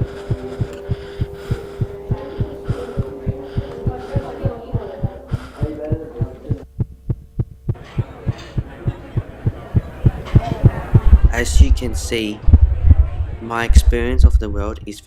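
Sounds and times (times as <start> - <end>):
muffled jumble of tones: 0.0 - 14.2
fast heartbeat-like thumping: 0.0 - 14.6
steady hum: 0.0 - 15.0.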